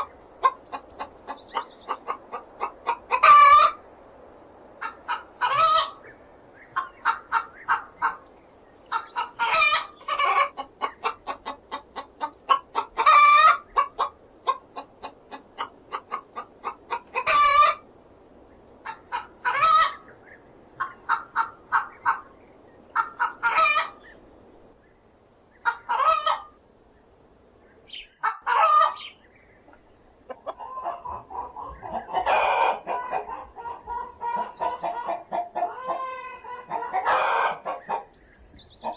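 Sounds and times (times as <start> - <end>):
hen cackling: 0.0 - 3.8, 4.8 - 6.1, 6.7 - 17.8, 18.8 - 20.1, 20.8 - 22.3, 22.9 - 24.0, 25.6 - 26.6, 27.9 - 38.1.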